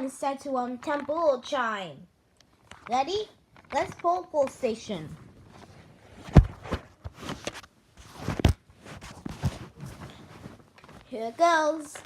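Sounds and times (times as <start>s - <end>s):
knocks and thumps of handling: 2.6s - 11.2s.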